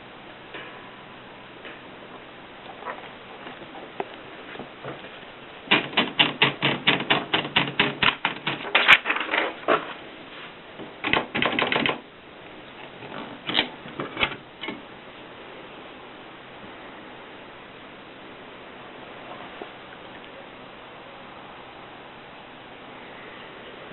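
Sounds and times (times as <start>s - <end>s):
typewriter keys striking: 5.7s - 9.0s, 11.0s - 12.0s.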